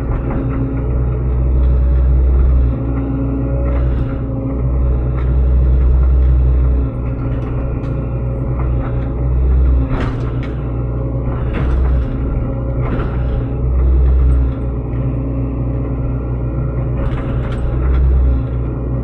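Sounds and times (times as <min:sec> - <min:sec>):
excavator diesel engine: 0:00.0 - 0:19.0.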